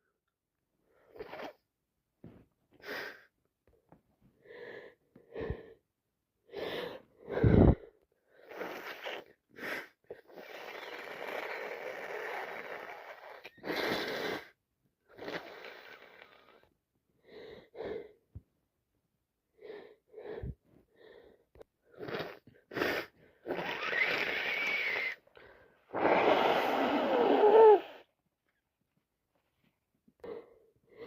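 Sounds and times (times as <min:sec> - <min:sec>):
woman sniffing: 0:25.9 - 0:28.1.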